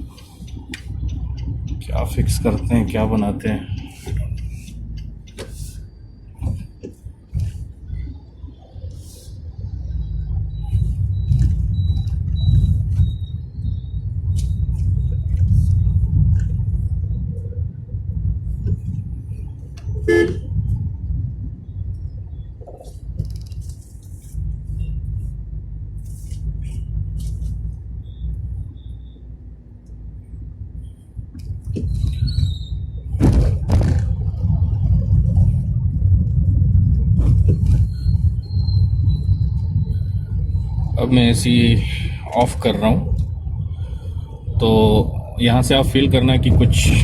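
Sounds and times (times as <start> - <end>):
road and engine rumble: 0.0 - 47.0
car horn toot: 20.0 - 20.5
knocks and rattles: 33.2 - 35.4.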